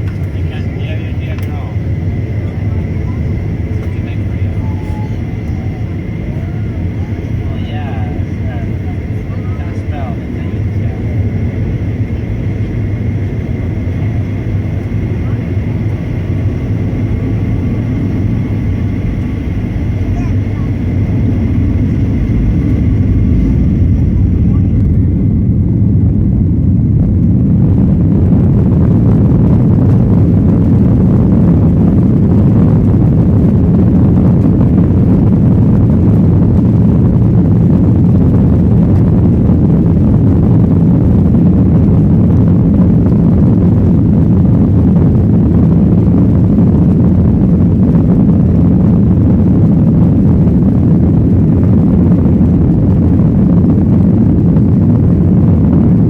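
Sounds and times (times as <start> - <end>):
jet engine roar in cabin: 0.0 - 56.0.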